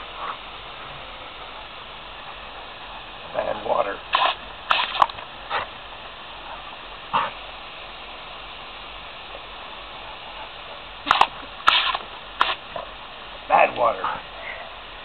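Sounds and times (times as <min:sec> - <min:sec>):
steady hiss: 0:00.0 - 0:15.0
dog barking: 0:06.5 - 0:07.4.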